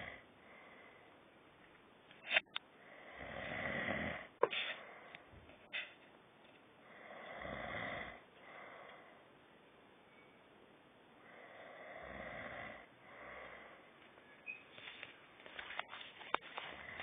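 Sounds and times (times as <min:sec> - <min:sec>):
person snoring: 0:02.8 - 0:04.3, 0:06.9 - 0:09.0, 0:11.2 - 0:13.9.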